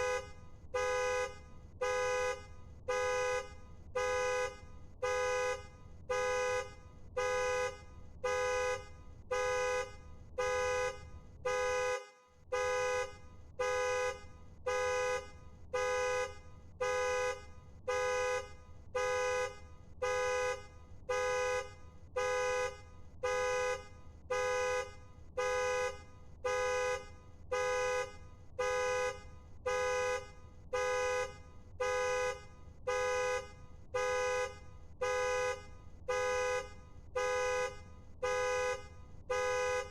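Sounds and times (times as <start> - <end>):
car horn honks: 0.0 - 39.9.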